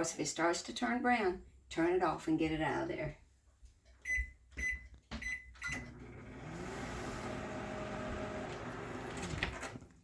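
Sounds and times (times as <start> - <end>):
microwave oven humming: 5.7 - 9.8.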